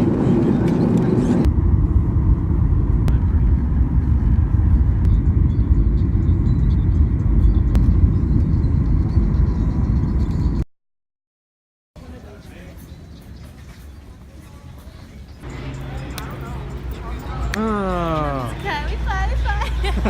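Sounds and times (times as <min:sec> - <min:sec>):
jet airliner cabin rumble: 0:00.0 - 0:10.6.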